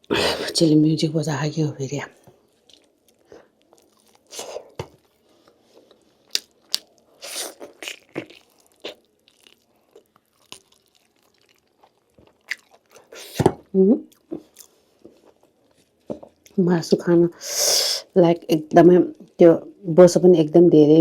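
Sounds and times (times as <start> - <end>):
person chewing meat: 2.4 - 16.6.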